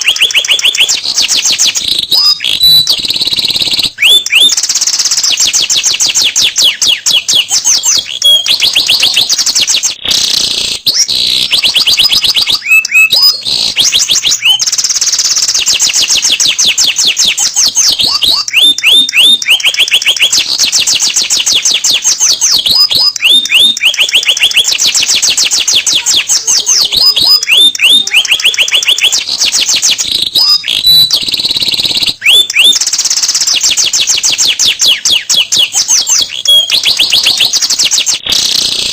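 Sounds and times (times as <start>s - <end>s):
canary singing trills: 0.0s - 38.9s.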